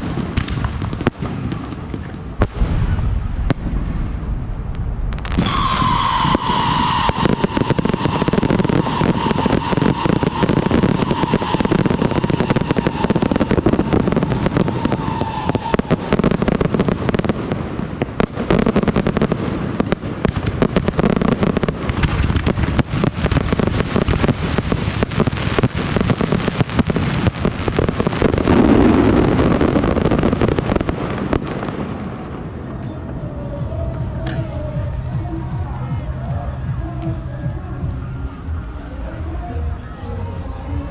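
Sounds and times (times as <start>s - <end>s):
fireworks crackling and popping: 0.0s - 39.8s
high whistle: 5.4s - 16.1s.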